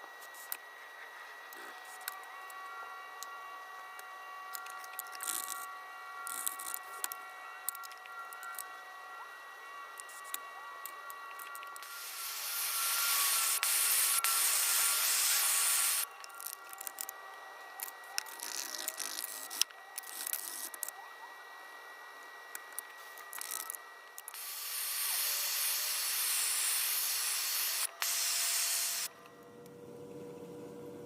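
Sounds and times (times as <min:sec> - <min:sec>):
hissing air spray blasts: 0:11.8 - 0:16.0, 0:24.4 - 0:29.1.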